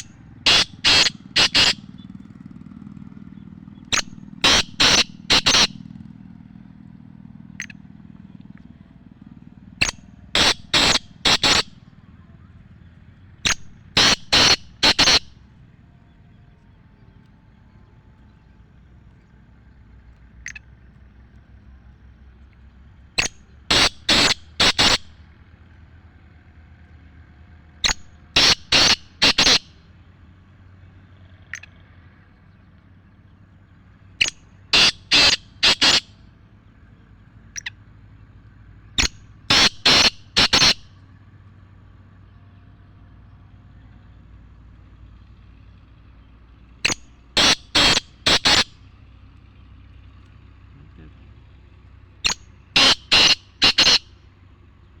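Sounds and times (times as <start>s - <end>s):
francolin harsh call series: 0.0s - 2.2s, 3.8s - 5.9s, 7.6s - 7.8s, 9.6s - 12.7s, 13.4s - 15.5s, 20.3s - 20.7s, 23.2s - 25.7s, 27.2s - 29.9s, 31.5s - 31.9s, 33.8s - 41.6s, 46.5s - 54.7s.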